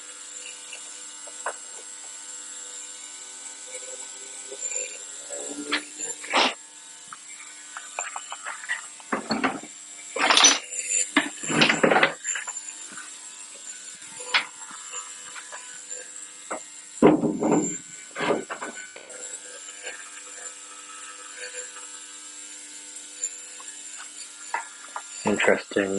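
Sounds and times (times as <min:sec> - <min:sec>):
ultrasonic cleaner humming: 0:00.0 - 0:25.9
parts clattering and rustling: 0:07.7 - 0:12.6, 0:17.0 - 0:19.1.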